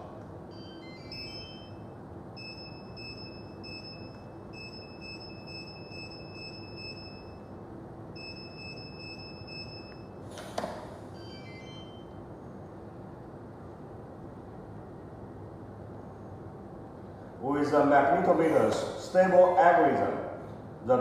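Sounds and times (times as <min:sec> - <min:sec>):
high electronic keypad beeps: 0:00.5 - 0:07.5, 0:08.2 - 0:10.2, 0:11.2 - 0:12.2.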